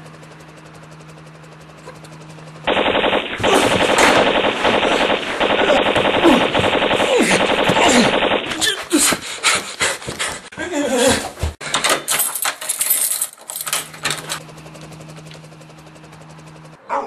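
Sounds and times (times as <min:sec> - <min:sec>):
machine-gun fire: 0:02.6 - 0:08.8.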